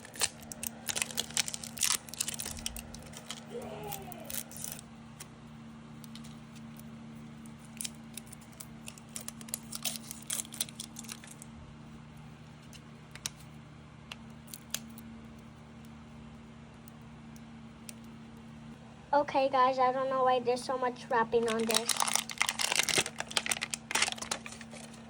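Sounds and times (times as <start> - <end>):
plastic wrapping crackling: 0.0 - 4.8, 7.7 - 11.5, 21.2 - 25.0.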